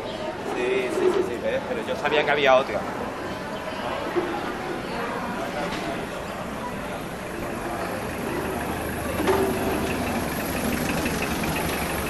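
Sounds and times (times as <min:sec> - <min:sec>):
street ambience: 0:00.0 - 0:12.0
vehicle engine rumbling: 0:04.0 - 0:12.0.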